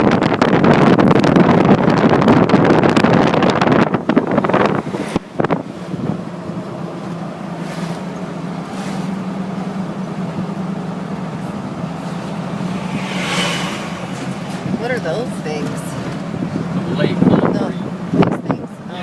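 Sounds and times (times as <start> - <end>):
wind buffeting microphone: 0.0 - 7.4, 11.5 - 18.8
vehicle engine hum and road noise: 0.0 - 19.0.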